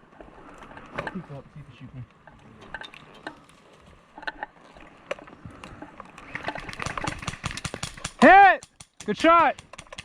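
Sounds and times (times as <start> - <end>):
airsoft guns firing: 6.6 - 10.0.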